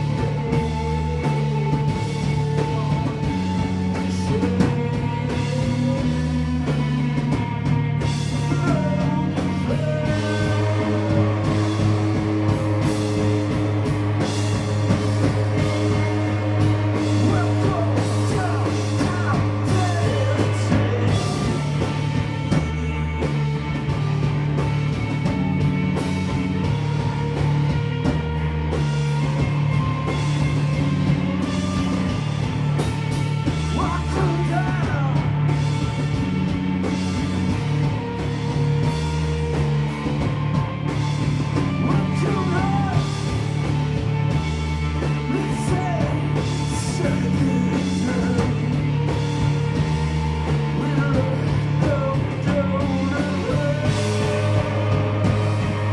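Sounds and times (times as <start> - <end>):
person singing: 0.0 - 25.4, 33.4 - 36.2, 41.6 - 55.9
bass line: 0.0 - 55.9
noise rock band playing live: 0.0 - 55.9.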